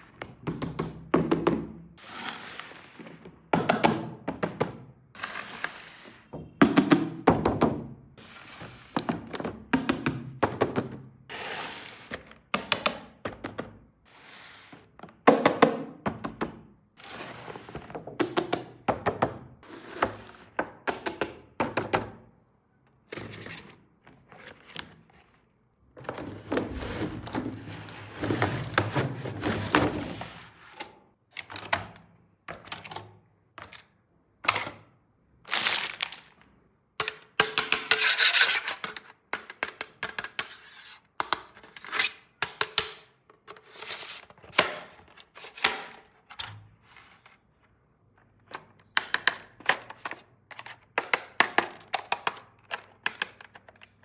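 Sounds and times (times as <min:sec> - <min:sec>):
packaging rustling: 0:35.4 - 0:36.4
plastic toys clicking and knocking: 0:36.0 - 0:40.6, 0:48.2 - 0:54.0.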